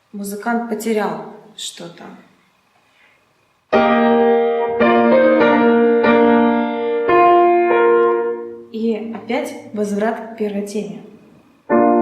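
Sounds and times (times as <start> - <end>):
piano chords: 3.7 - 10.0, 11.6 - 12.0.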